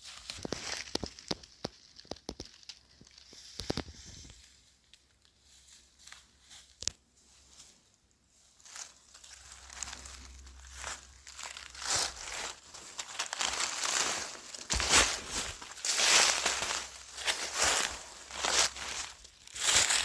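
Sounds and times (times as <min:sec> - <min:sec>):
rustling of brush and clothing: 0:00.0 - 0:20.0.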